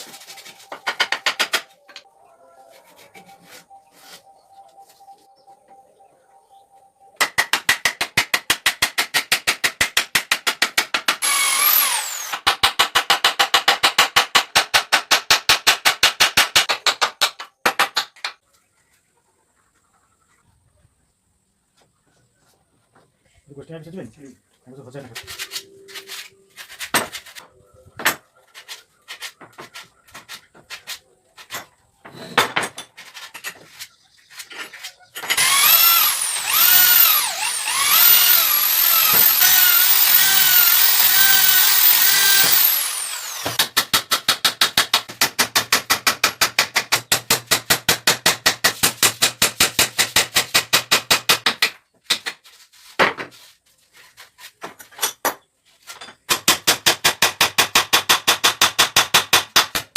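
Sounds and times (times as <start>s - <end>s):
power tool motor whining: 11.2s - 12.4s, 35.2s - 43.6s.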